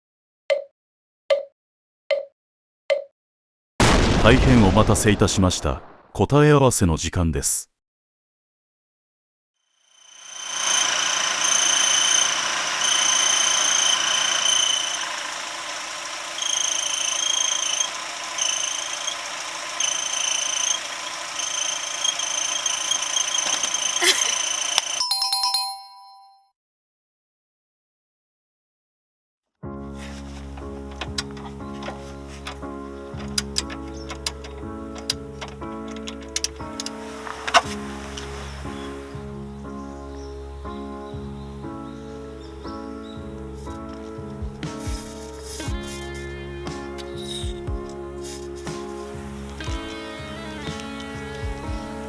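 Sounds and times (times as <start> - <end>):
high-pitched chirping from engine bay: 9.9 - 26.0, 31.1 - 39.4, 40.0 - 52.0
car engine running: 10.1 - 25.0, 30.0 - 39.6, 42.2 - 52.0
rattle of clicks: 10.3 - 25.0, 30.4 - 38.3, 43.4 - 52.0
brief chime-like tone: 25.0 - 26.5
background music chords: 29.7 - 52.0.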